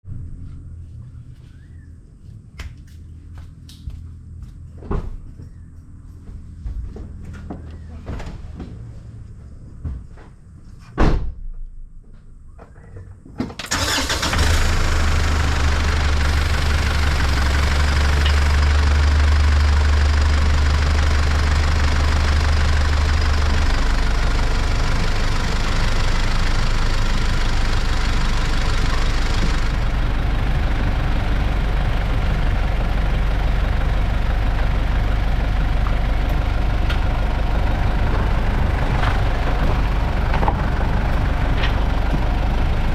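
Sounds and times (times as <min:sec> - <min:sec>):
loud thump: 0:11.0 - 0:11.5
car engine starting and idling: 0:13.5 - 0:42.9.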